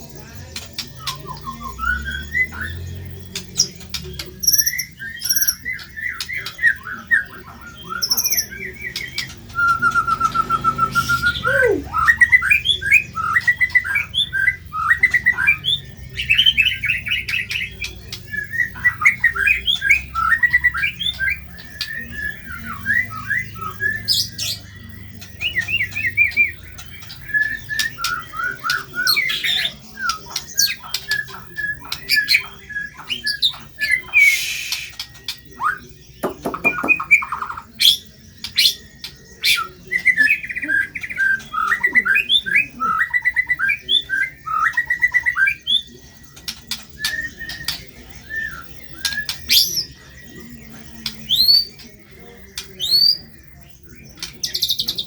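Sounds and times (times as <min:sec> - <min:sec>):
songbird singing chirps and trills: 0:00.0 - 0:55.0
bird harsh squawks: 0:34.1 - 0:35.1.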